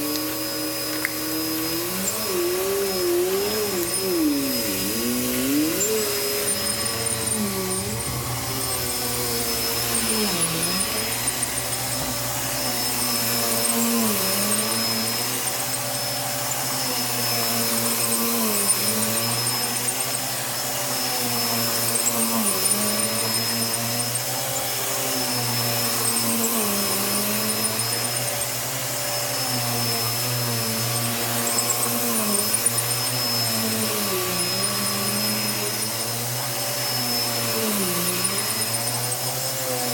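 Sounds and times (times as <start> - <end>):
vacuum cleaner on a rug: 0.0 - 39.9.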